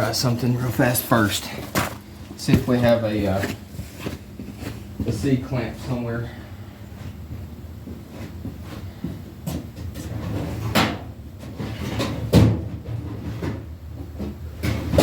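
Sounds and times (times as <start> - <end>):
low steady hum: 0.0 - 15.0
rummaging knocks and clatter: 1.5 - 5.2.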